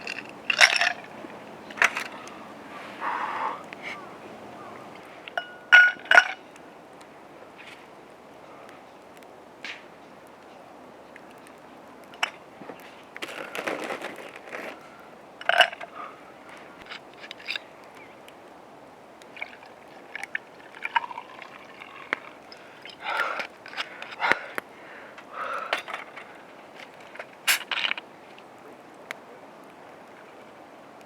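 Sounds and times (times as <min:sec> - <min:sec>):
gear clinking and scraping: 0:00.0 - 0:02.3, 0:13.2 - 0:14.8, 0:15.4 - 0:16.0, 0:16.8 - 0:17.7.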